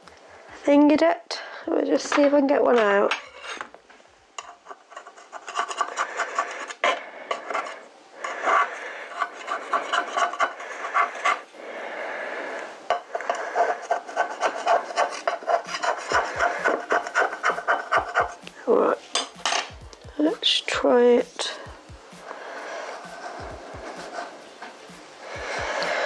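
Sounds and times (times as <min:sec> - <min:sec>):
utensil scraping metal baking tin: 0:04.4 - 0:21.6.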